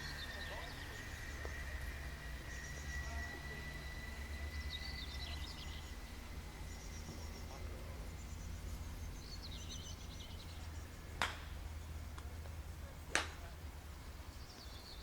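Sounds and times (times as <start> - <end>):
faint thin steady tone: 0.0 - 11.0
small birds twittering: 0.0 - 12.2, 13.9 - 15.0
low rumble: 0.0 - 14.4.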